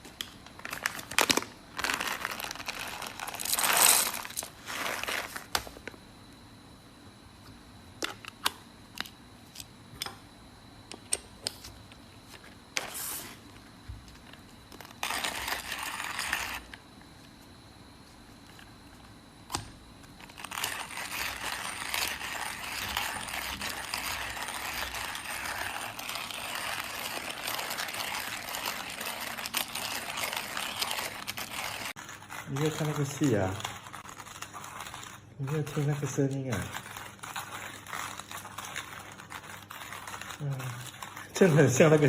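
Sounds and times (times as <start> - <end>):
coffee grinder grinding: 0.6 - 5.6, 14.2 - 16.8, 19.5 - 42.0.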